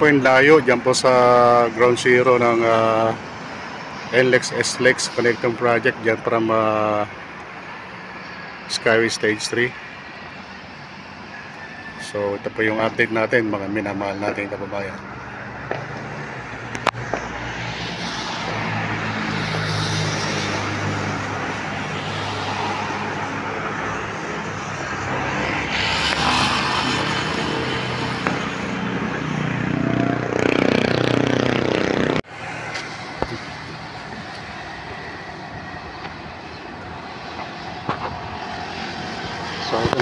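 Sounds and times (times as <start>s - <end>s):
vehicle engines passing: 0.0s - 40.0s
engine revving up: 23.7s - 33.5s.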